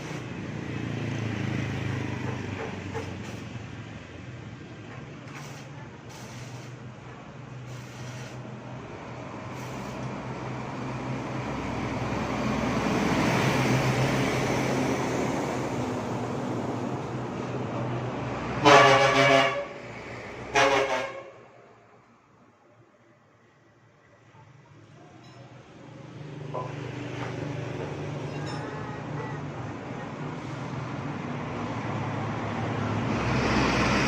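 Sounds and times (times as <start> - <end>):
vehicle passing: 0.0 - 4.0, 8.5 - 18.6, 29.0 - 34.0
horn honking: 18.6 - 19.8, 20.5 - 21.4.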